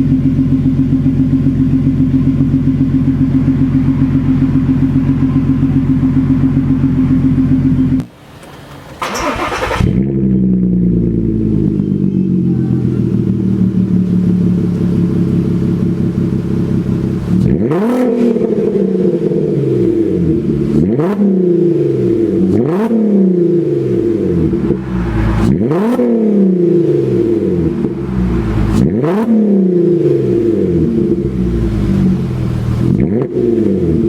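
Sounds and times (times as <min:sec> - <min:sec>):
car engine idling: 0:00.0 - 0:34.0
engine revving: 0:09.0 - 0:34.0.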